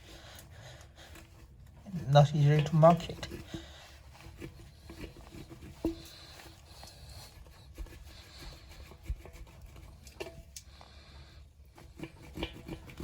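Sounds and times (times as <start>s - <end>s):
tools clicking and scraping on tire: 2.4s - 10.9s.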